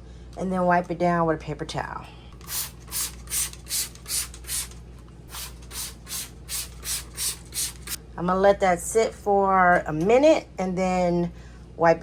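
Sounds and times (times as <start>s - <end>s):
spray bottle squirting: 2.4s - 8.0s.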